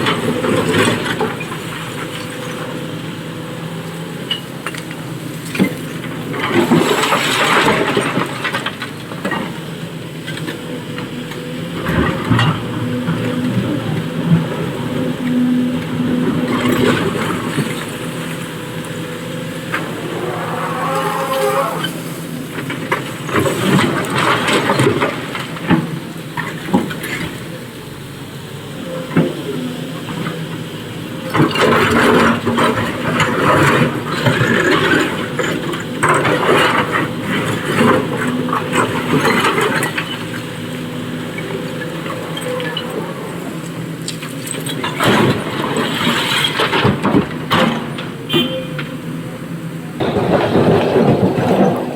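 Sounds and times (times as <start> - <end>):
excavator diesel engine running: 0.0 - 51.9
rocks clattering: 50.0 - 51.9.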